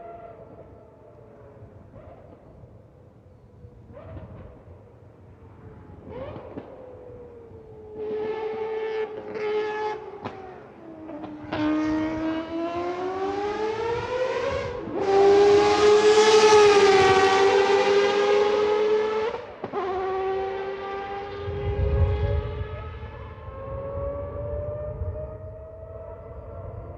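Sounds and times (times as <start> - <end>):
rotary engine accelerating: 8.0 - 26.8.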